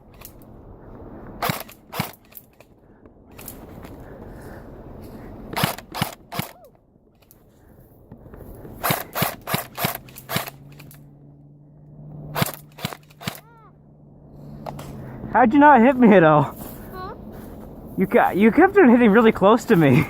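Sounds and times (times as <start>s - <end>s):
airsoft gun shots: 12.3s - 13.5s.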